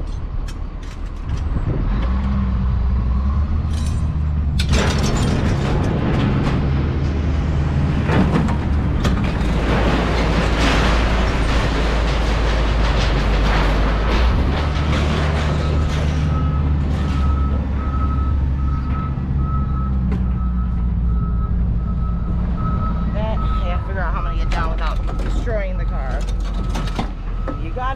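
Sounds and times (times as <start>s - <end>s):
rattling and clanking: 0.0s - 2.6s, 3.5s - 21.0s, 23.8s - 27.8s
heavy vehicle engine running: 0.0s - 27.9s
reversing alarm beeping: 15.5s - 27.9s.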